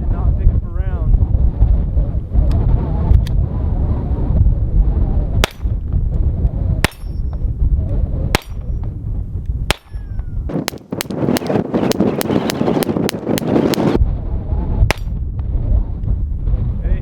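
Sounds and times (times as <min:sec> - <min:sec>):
wind buffeting microphone: 0:00.0 - 0:17.0
pistol shots: 0:05.4 - 0:05.7, 0:08.4 - 0:08.6, 0:09.7 - 0:11.5.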